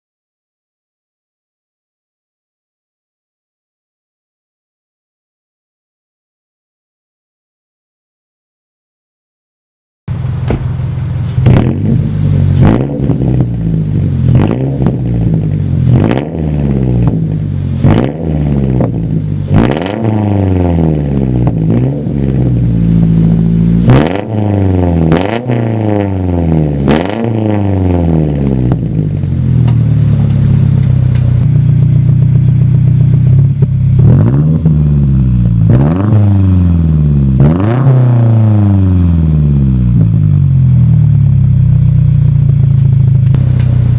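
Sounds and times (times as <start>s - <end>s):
car engine revving: 10.1s - 43.9s.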